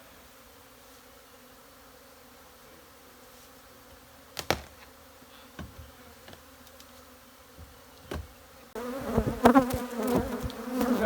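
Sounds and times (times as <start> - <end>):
honeybees buzzing: 0.0 - 11.0
sharp knocks: 4.4 - 4.8.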